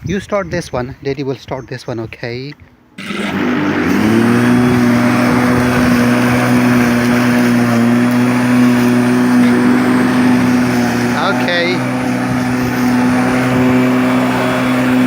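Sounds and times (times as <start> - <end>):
electric lawnmower motor whine: 3.0 - 15.0.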